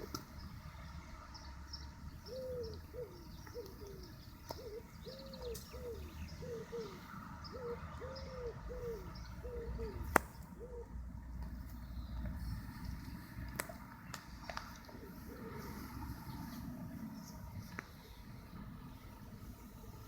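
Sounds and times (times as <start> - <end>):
small birds chirping: 0.0 - 18.6
pigeon cooing: 2.3 - 11.0, 14.8 - 16.2.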